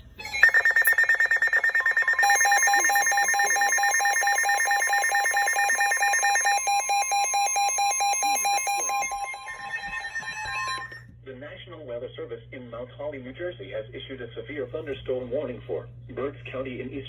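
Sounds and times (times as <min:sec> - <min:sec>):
steady warning alarm tone: 0:00.2 - 0:11.0
rapid alert beeps: 0:00.4 - 0:11.0.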